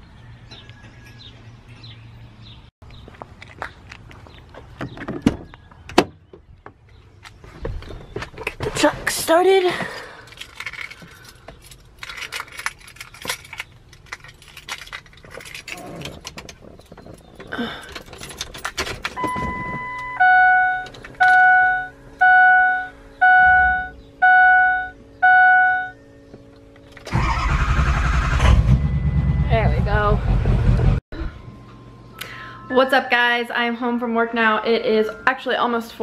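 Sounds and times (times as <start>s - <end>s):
keys jangling: 9.6s - 19.2s
dashboard warning chime: 19.2s - 26.8s
diesel engine cranking and starting: 26.6s - 31.0s.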